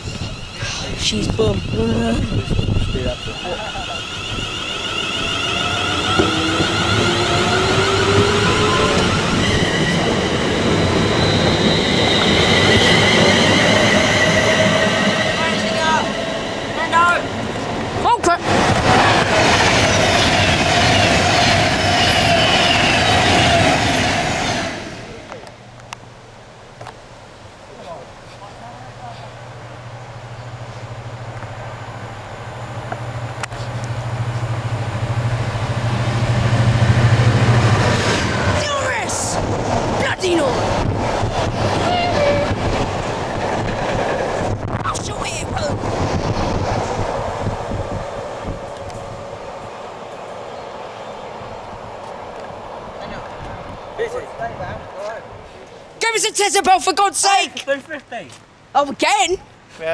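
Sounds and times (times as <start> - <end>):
traction motors whining: 0.0 - 25.9
train wheels rumbling on track: 0.0 - 26.0, 28.4 - 57.4.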